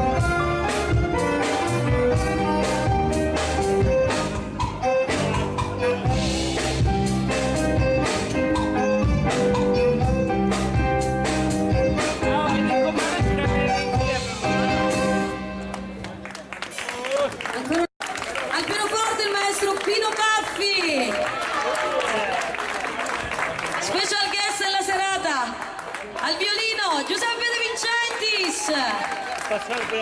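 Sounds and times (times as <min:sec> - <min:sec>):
drums: 0:00.0 - 0:16.2
live jazz band playing: 0:00.0 - 0:16.9.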